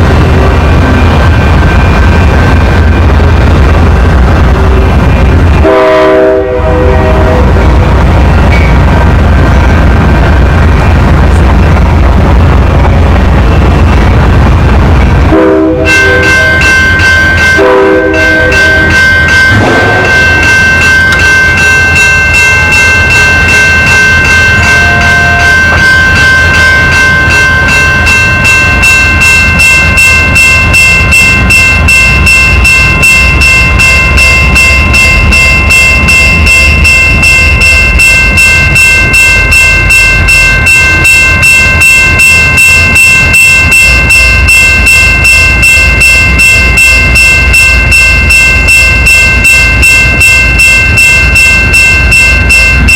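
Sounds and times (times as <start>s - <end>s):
train horn blasts: 4.6s - 7.9s, 15.3s - 16.5s, 17.6s - 20.2s
train wheel clicks: 18.7s - 24.8s.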